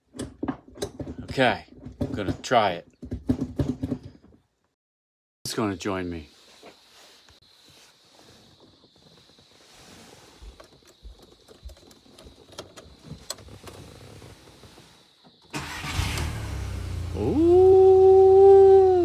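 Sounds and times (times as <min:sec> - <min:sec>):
car engine starting: 0:15.5 - 0:19.0.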